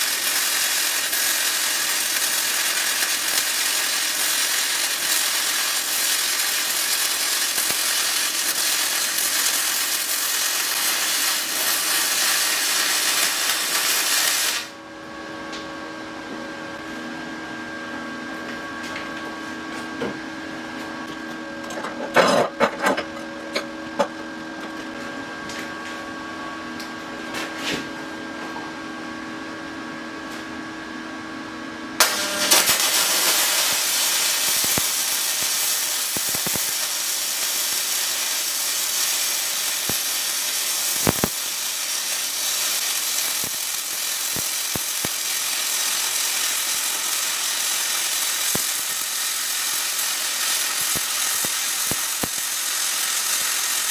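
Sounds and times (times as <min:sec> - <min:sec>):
welding arc crackling: 0:00.0 - 0:14.8, 0:32.0 - 0:53.9
welder humming: 0:00.0 - 0:20.2, 0:31.8 - 0:53.9.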